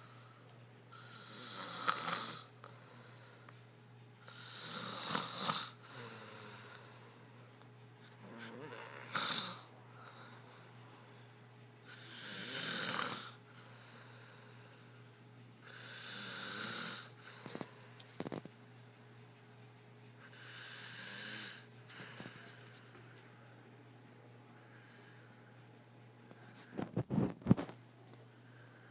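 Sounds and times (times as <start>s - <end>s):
girl snoring: 0.9s - 3.2s, 4.3s - 7.1s, 8.1s - 10.5s, 11.9s - 13.4s, 15.7s - 17.1s, 20.4s - 21.6s.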